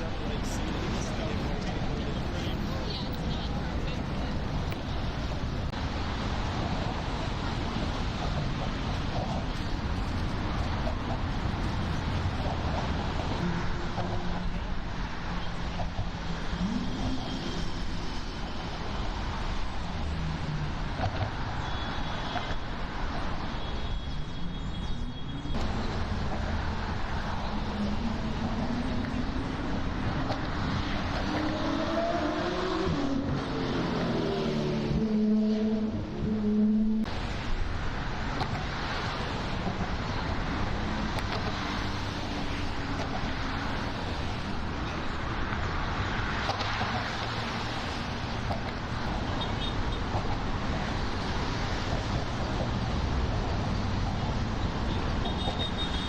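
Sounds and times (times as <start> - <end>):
hum of traffic: 0.0 - 56.0
passing cars rumble and hiss: 0.0 - 56.0.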